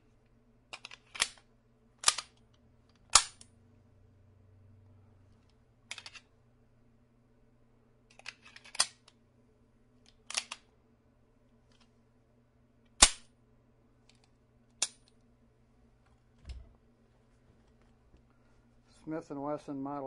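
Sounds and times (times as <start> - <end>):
pistol clicks and snaps: 3.0 - 3.5, 10.3 - 10.6
faint low thump: 16.4 - 16.8.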